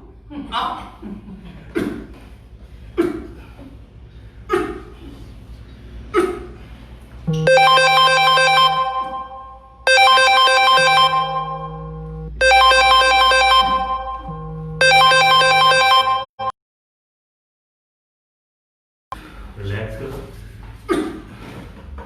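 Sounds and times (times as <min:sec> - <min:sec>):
phone ringtone melody: 0:07.3 - 0:16.5.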